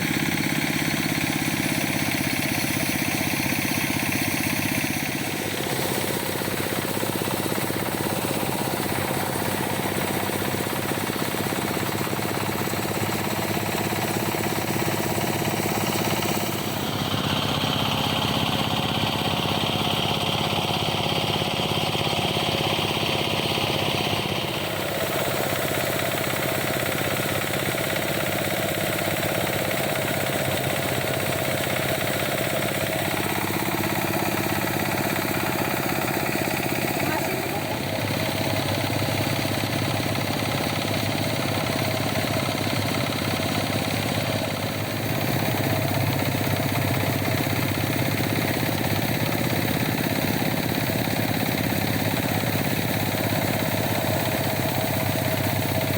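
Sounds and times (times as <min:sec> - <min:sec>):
combine harvester rattling: 0:00.0 - 0:55.9.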